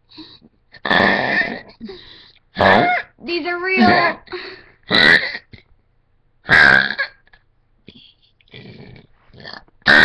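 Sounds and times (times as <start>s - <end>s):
girl burping loudly: 4.9s - 5.5s.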